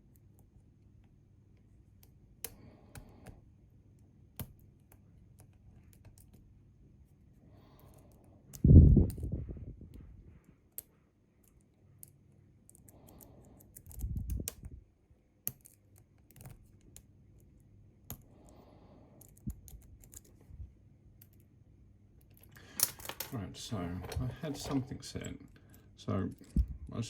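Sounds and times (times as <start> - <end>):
lock picks clicking in a lock: 10.7 - 14.7, 22.2 - 23.4.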